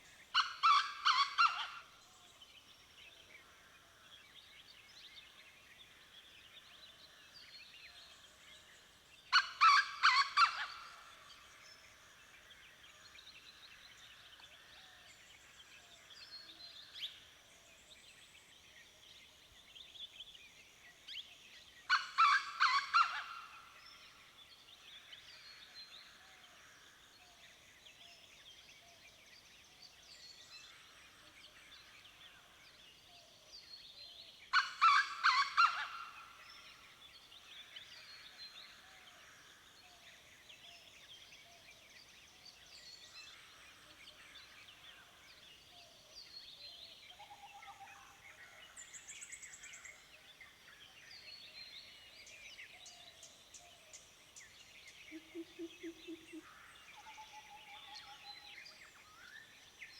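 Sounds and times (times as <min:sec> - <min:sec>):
birds chirping and trilling: 0:21.2 - 0:59.9.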